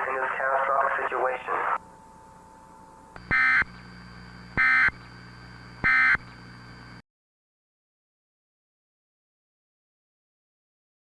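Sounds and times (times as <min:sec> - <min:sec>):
faint steady hum: 0:00.0 - 0:07.0
electronic data bursts: 0:03.2 - 0:06.8.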